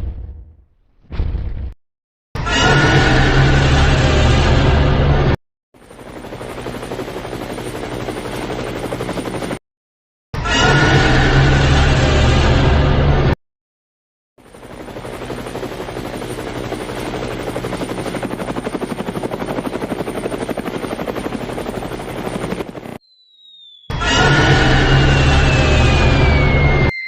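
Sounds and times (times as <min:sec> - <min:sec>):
helicopter rotor chopping: 0:05.8 - 0:09.6, 0:14.4 - 0:23.0.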